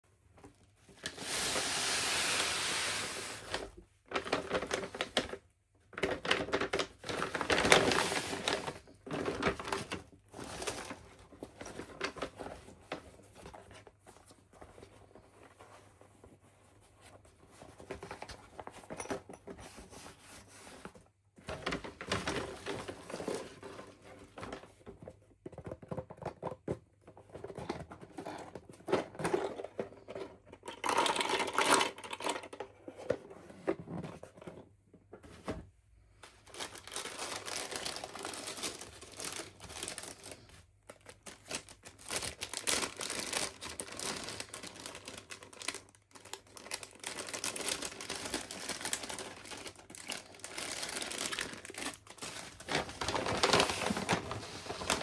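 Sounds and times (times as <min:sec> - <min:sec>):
packaging crinkling and tearing: 0:00.9 - 0:05.4, 0:06.0 - 0:12.5, 0:36.5 - 0:55.0.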